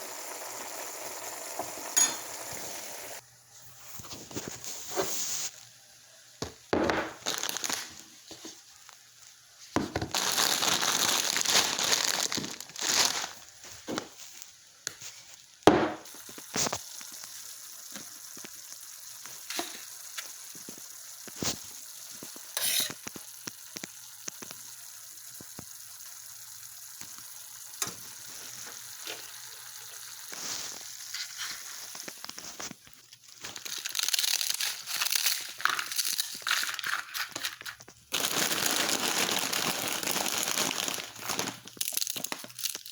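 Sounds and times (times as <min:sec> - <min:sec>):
food sizzling in a pan: 0:00.0 - 0:42.9
crackles and pops: 0:07.0 - 0:08.0, 0:16.0 - 0:25.8, 0:30.0 - 0:42.9.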